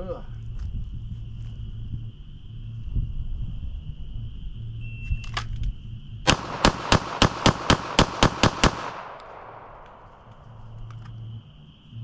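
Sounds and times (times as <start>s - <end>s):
rapid pistol shots: 6.3s - 10.3s.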